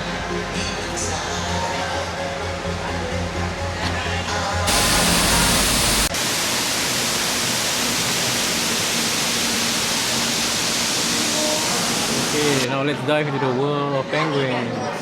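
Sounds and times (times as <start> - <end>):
loud rushing hiss: 4.7 - 12.7.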